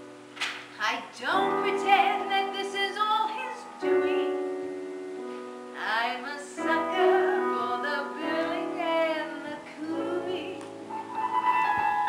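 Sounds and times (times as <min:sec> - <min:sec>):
woman singing show tune: 0:00.8 - 0:04.5, 0:05.8 - 0:10.7
instrumental accompaniment: 0:06.6 - 0:12.0.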